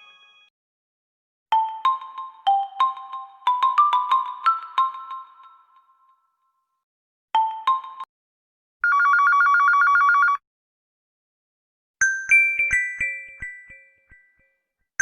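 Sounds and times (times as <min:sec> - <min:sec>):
bell-like ringtone melody: 0:00.0 - 0:00.5, 0:01.5 - 0:06.3, 0:07.4 - 0:08.1, 0:08.8 - 0:10.4, 0:12.0 - 0:14.7
mallet-like ringtone notes: 0:01.5 - 0:06.2, 0:07.4 - 0:08.1, 0:12.0 - 0:14.6
electronic telephone ring: 0:08.8 - 0:10.4.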